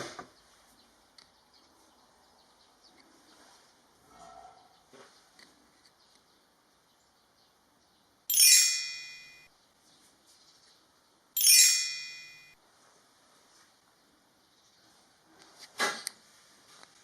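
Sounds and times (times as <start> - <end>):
bright chime dings: 8.3 - 9.5, 11.4 - 12.6.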